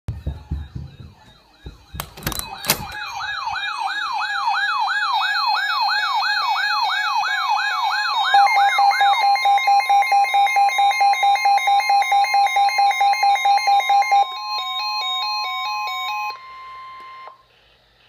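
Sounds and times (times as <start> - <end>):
low thumps: 0.1 - 3.0
slow siren wail: 0.1 - 17.4
electronic siren yelping: 0.3 - 17.4.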